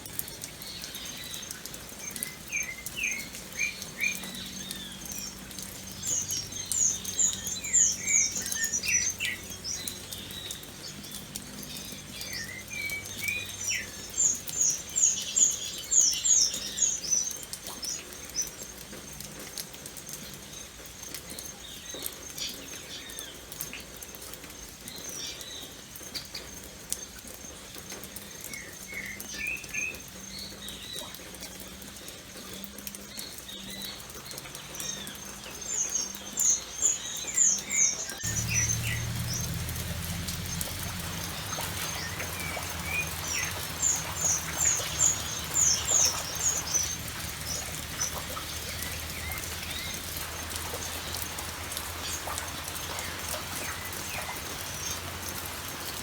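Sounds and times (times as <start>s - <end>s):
rain pattering: 0.0s - 56.0s
birds calling: 0.5s - 17.3s, 34.6s - 56.0s
low hum: 38.2s - 49.9s.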